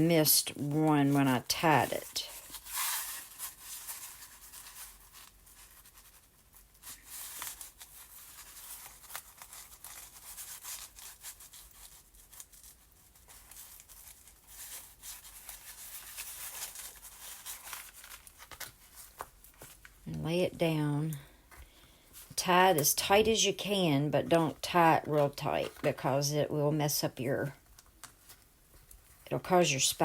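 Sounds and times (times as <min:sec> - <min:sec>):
paper and twine rustling: 0:00.2 - 0:20.1, 0:24.4 - 0:26.2.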